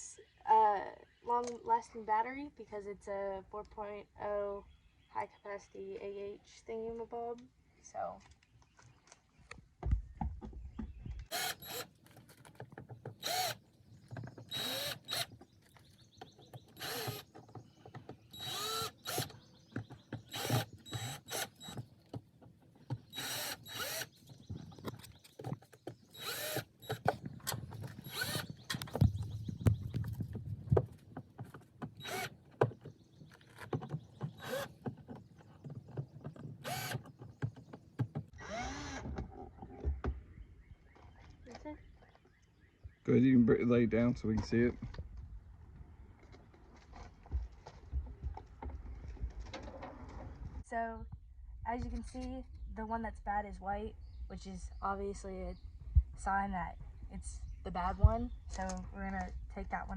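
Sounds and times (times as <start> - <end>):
cordless drill running in bursts: 11.3 - 12.0, 13.1 - 13.6, 14.4 - 15.4, 16.7 - 17.4, 18.3 - 19.5, 20.2 - 21.9, 23.0 - 24.2, 26.1 - 28.7, 32.0 - 32.4, 34.4 - 34.8, 36.6 - 37.1, 38.4 - 39.0.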